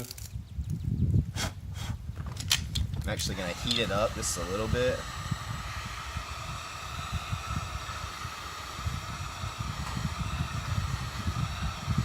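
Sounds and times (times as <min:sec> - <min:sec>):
heat gun blowing: 0:03.1 - 0:12.0.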